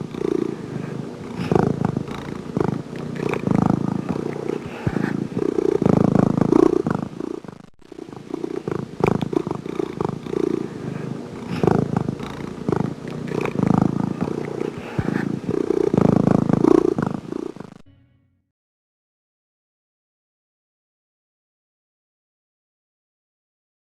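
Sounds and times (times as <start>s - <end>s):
cat purring: 0.0s - 17.8s.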